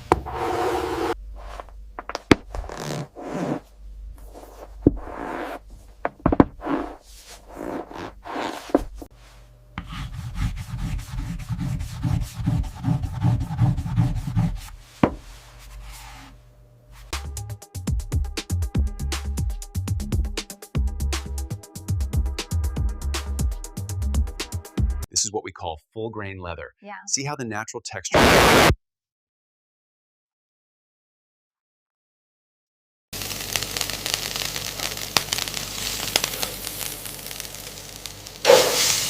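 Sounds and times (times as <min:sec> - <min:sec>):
rubbing and scraping: 0:02.5 - 0:09.2, 0:09.8 - 0:16.4.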